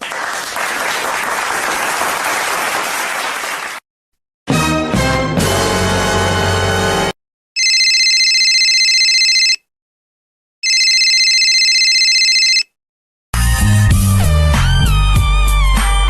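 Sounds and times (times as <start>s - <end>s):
telephone ringing: 7.6s - 9.7s, 10.6s - 12.7s.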